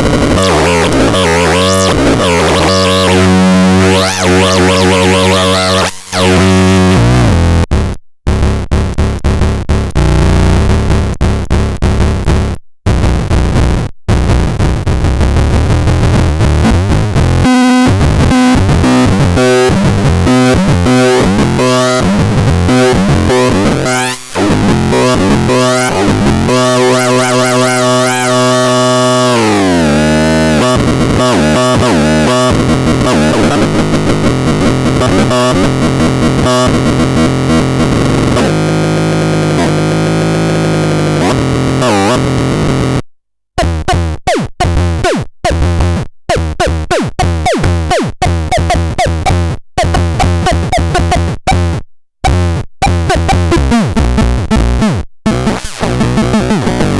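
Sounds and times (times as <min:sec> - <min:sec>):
short stuttering blips: 0:00.0 - 0:07.3, 0:46.3 - 0:51.6
distorted synthesizer tones: 0:00.0 - 0:13.5, 0:14.1 - 0:43.0, 0:43.6 - 0:56.9.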